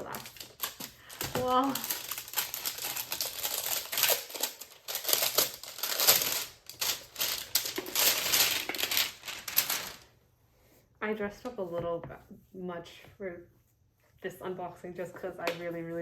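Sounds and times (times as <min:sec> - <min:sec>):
packaging crinkling and rustling: 0:00.0 - 0:10.1.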